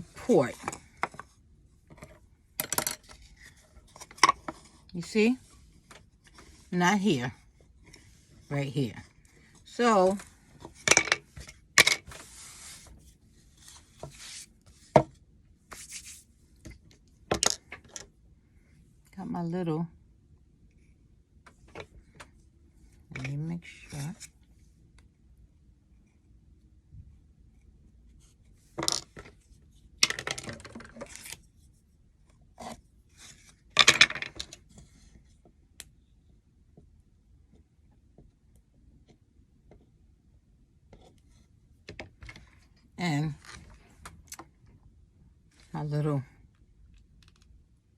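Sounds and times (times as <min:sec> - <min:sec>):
wooden pieces knocking: 0:10.1 - 0:12.2, 0:17.3 - 0:18.0, 0:28.8 - 0:29.3, 0:30.0 - 0:31.2, 0:33.8 - 0:34.6
wood rubbing or sliding: 0:12.1 - 0:13.0.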